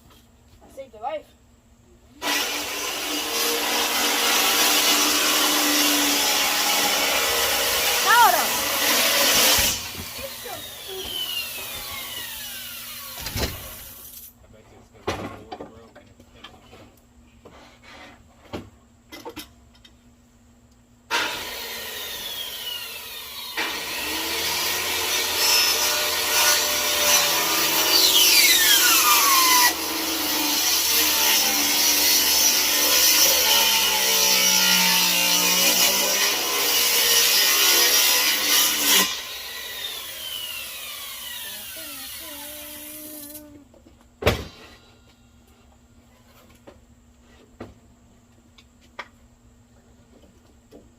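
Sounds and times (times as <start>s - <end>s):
power saw cutting wood: 2.2s - 14.1s, 21.1s - 43.5s.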